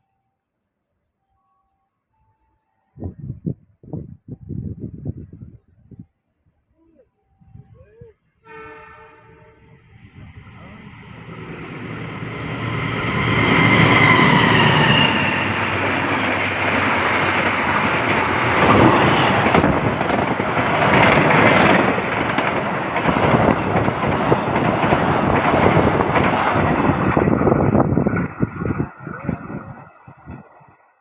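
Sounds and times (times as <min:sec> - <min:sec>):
train passing at speed: 0:08.4 - 0:31.0
wheels clacking on rail: 0:09.0 - 0:30.8.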